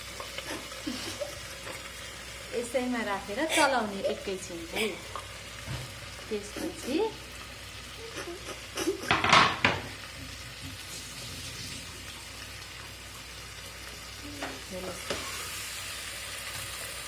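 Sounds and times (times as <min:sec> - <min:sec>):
vegetables sizzling in oil: 0:00.0 - 0:17.0.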